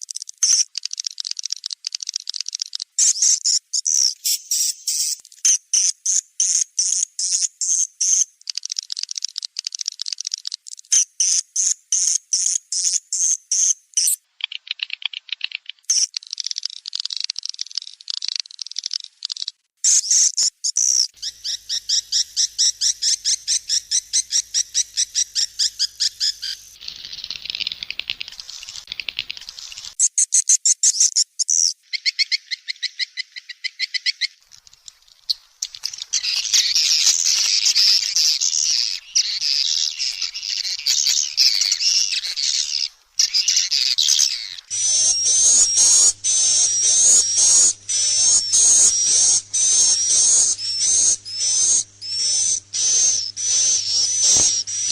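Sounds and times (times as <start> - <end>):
swiftlets twittering chirps: 15.8 - 33.7, 34.3 - 54.9.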